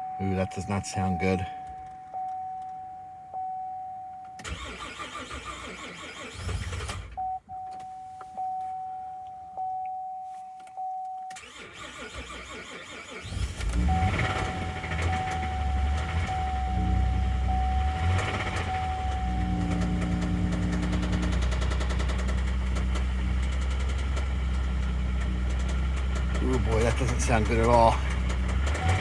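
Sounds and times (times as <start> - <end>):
engine starter cranking: 4.4 - 7.2, 11.3 - 16.4
car engine running loudly: 13.3 - 29.0.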